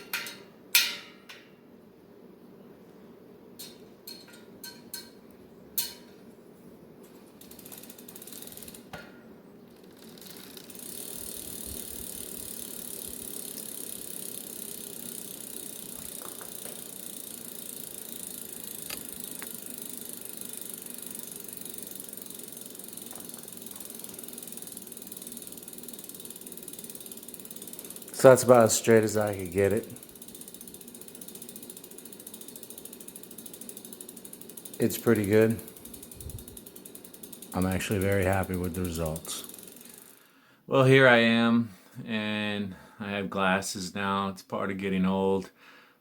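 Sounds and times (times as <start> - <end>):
bicycle freewheel ratchet ticking: 7.1 - 9.0, 9.7 - 40.4.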